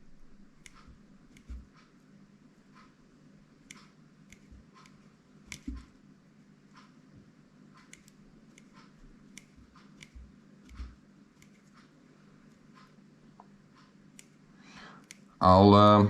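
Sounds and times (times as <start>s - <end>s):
pliers snipping fishing line: 3.6s - 5.8s, 7.8s - 11.8s.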